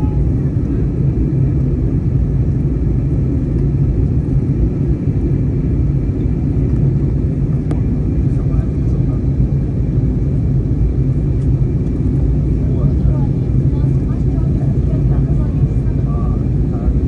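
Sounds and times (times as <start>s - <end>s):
airliner cabin engine rumble: 0.0s - 17.0s.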